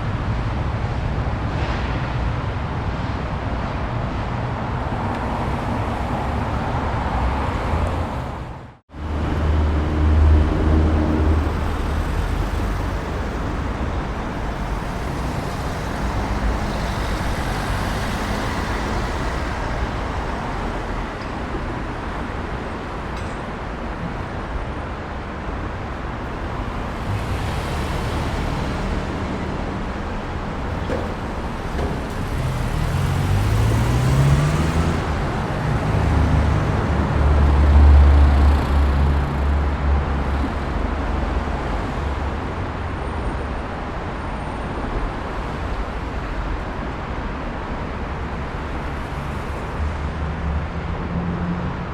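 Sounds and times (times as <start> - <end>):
heavy vehicle engine rumble: 0.0 - 51.9
passing cars and tyre noise: 0.0 - 51.9
vehicle accelerating: 26.3 - 39.8.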